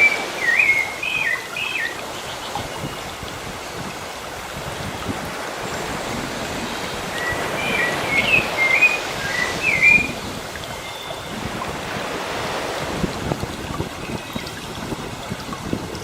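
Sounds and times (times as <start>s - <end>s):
bird singing whistled notes: 0.0s - 2.0s, 7.2s - 11.4s
sea waves washing: 0.0s - 16.0s.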